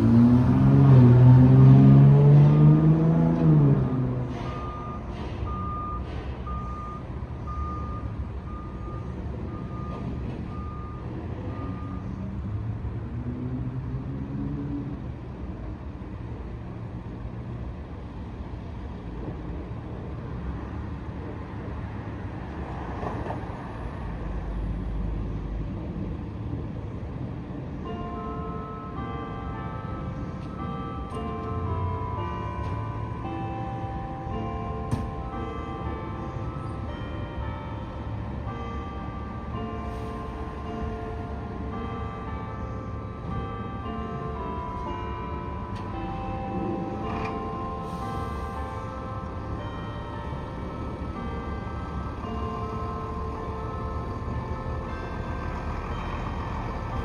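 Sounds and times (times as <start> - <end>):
street traffic rumble: 0.0 - 57.0
truck engines: 0.0 - 57.0
vehicle backup alarm beeping: 4.3 - 12.4, 27.9 - 57.0
church bells chiming: 27.8 - 57.0.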